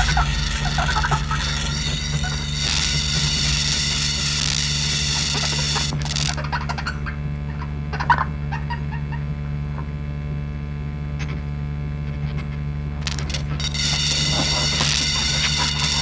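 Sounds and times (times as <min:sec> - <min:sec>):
small clicks and crackles: 0:00.0 - 0:06.5, 0:13.0 - 0:16.0
low electronic drone hum: 0:00.0 - 0:07.4, 0:12.8 - 0:16.0.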